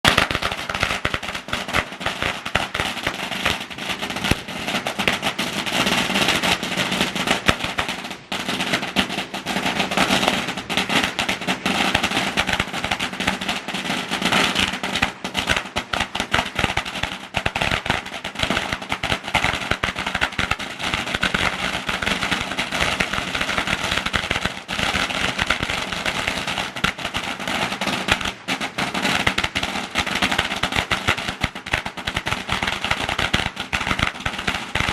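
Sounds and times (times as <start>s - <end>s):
firecrackers crackling: 0.0s - 34.9s.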